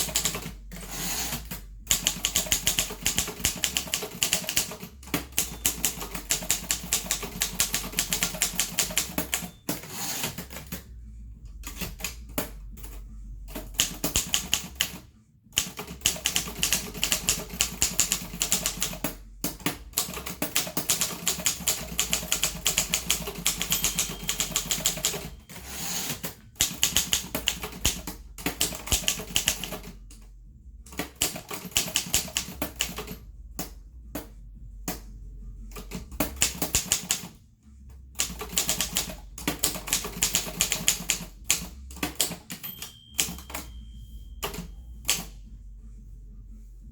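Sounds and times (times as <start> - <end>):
typewriter key strikes: 13.8 - 15.0, 15.6 - 29.8, 36.2 - 37.3, 38.2 - 43.7.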